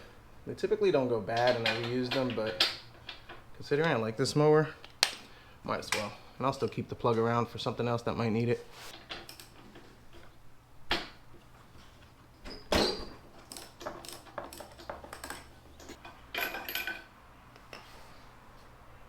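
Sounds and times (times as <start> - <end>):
metal hand tools clinking: 13.4 - 17.1.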